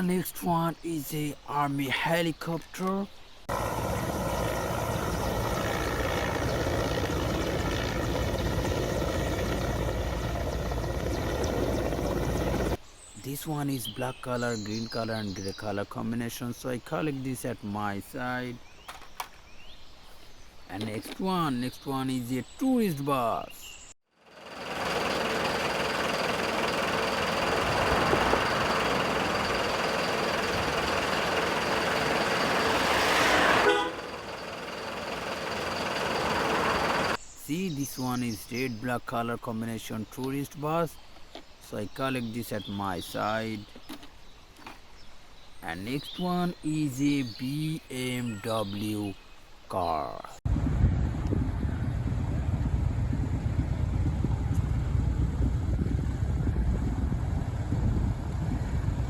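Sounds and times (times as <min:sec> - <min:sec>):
bus and traffic noise: 0:03.5 - 0:12.8, 0:24.3 - 0:37.2
helicopter rotor and engine: 0:03.5 - 0:12.8, 0:24.2 - 0:37.2.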